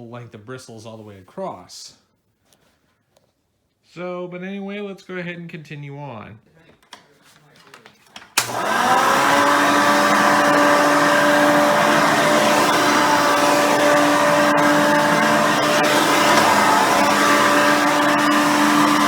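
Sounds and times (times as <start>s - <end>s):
vacuum cleaner whining and roaring: 8.3s - 19.0s.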